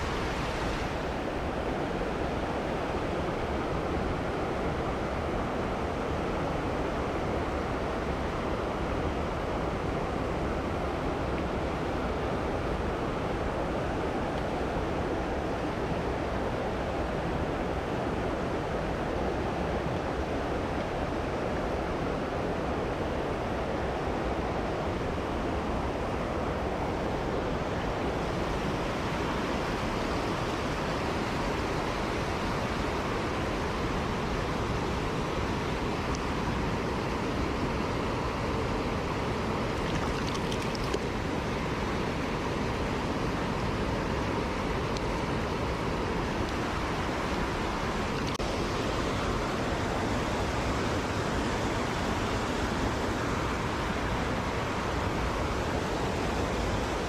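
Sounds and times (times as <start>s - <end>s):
stream rushing over rocks: 0.0s - 57.0s.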